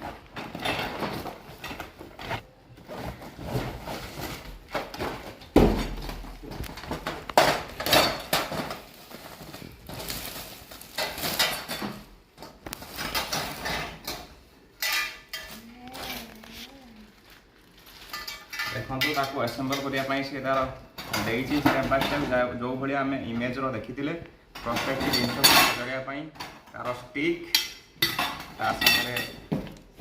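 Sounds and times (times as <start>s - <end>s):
metal rods and plates clinking: 12.9s - 16.3s, 18.0s - 20.2s, 24.6s - 25.9s, 27.5s - 29.5s.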